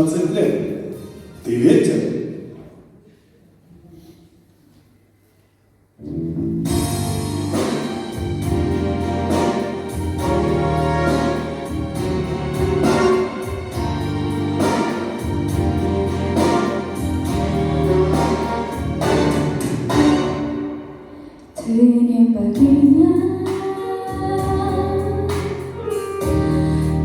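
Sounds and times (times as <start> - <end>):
instrumental backing track: 6.0 - 21.6, 22.6 - 27.0.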